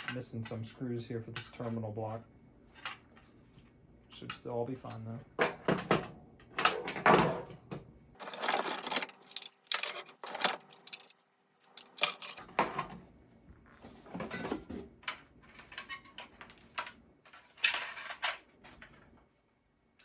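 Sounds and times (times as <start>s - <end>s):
devices clicking and rattling: 8.2s - 12.4s.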